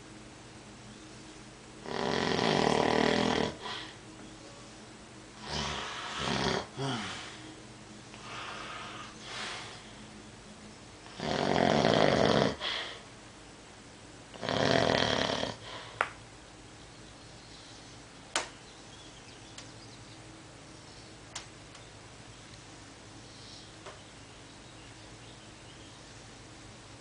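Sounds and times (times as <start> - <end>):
loud snores: 1.8 - 4.0, 5.4 - 7.4, 11.1 - 13.0, 14.3 - 16.0.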